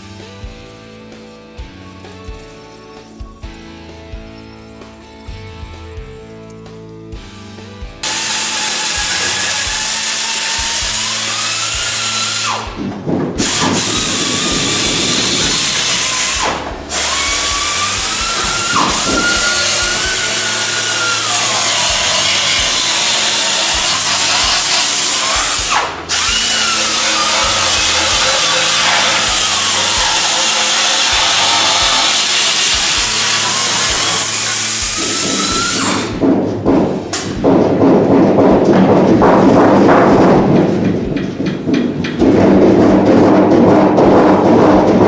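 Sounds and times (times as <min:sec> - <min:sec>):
power tool on car body metal: 0:08.0 - 0:36.2.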